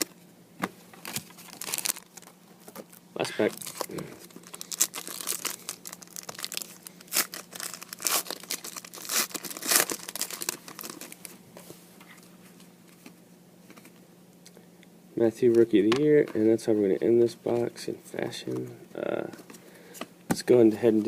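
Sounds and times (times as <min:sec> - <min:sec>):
wrapper tearing and crinkling: 0:01.0 - 0:11.3.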